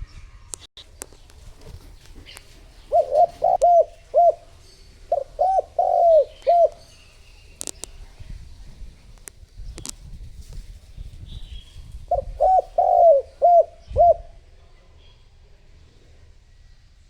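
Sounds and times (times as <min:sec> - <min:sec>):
dove cooing: 0:01.8 - 0:07.2, 0:12.1 - 0:14.4.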